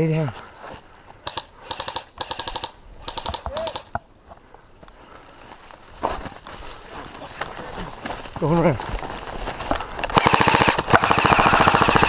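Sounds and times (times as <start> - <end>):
airsoft guns firing: 1.3 - 3.9, 10.1 - 12.0.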